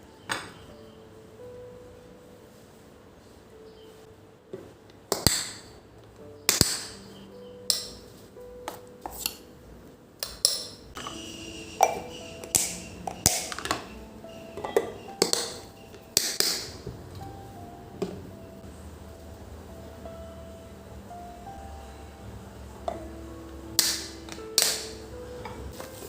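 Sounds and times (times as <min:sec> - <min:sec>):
soft background music: 0:00.0 - 0:26.0
dishes and utensils clinking: 0:10.2 - 0:16.8.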